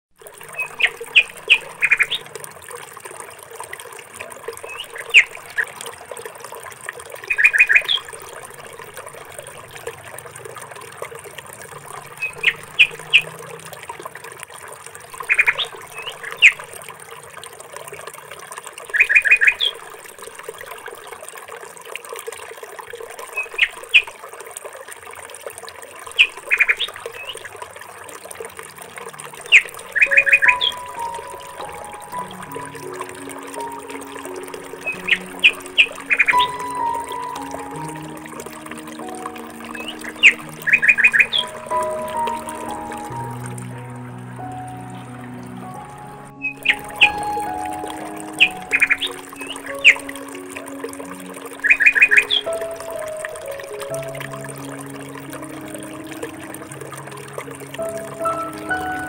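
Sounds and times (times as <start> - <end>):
small birds chirping: 0.4 - 2.3, 4.6 - 5.7, 7.3 - 8.1, 12.2 - 13.3, 15.2 - 16.7, 29.4 - 32.8, 34.8 - 38.0, 39.6 - 41.9, 46.4 - 47.5, 48.3 - 50.1, 51.6 - 52.5.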